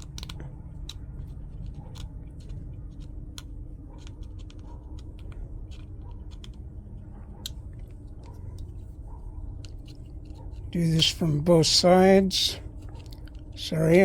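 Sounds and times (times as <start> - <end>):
hand tool clicking and scraping plastic: 0.0 - 6.6, 12.8 - 14.0.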